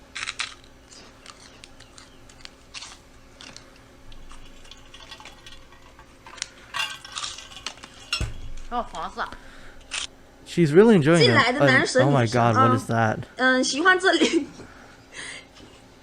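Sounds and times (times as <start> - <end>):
crunching prawn crackers: 0.0 - 8.0.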